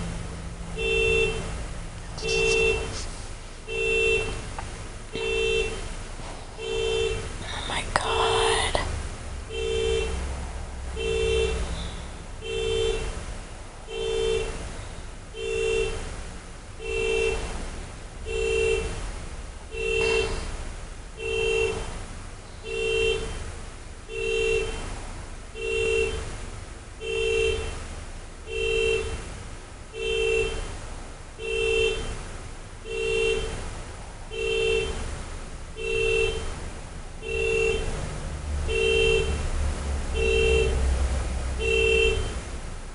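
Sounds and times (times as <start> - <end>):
car alarm horn blasts: 0.7 - 6.0, 6.6 - 7.4, 9.5 - 10.3, 10.9 - 16.1, 16.7 - 22.0, 22.6 - 26.4, 27.0 - 29.3, 29.9 - 33.6, 34.2 - 35.1, 35.8 - 36.6, 37.2 - 38.0, 38.6 - 39.5, 40.1 - 42.5.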